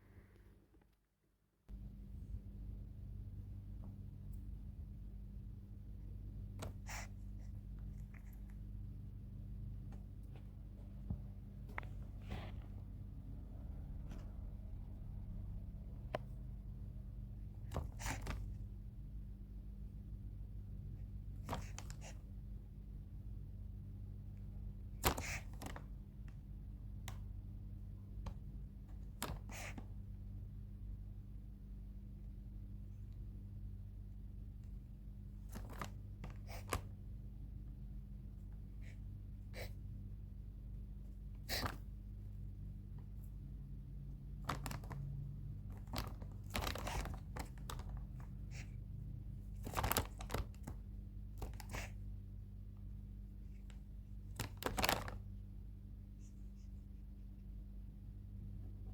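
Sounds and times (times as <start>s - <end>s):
low steady hum: 0.0s - 58.9s
bird rustling nest material: 44.3s - 48.7s, 49.3s - 52.1s.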